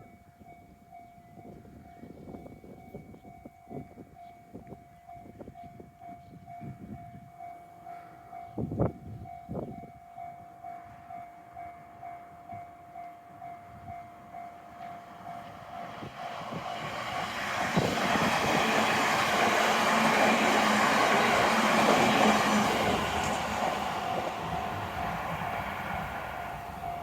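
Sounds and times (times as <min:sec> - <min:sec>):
train rumbling over crossing: 0:10.6 - 0:27.0.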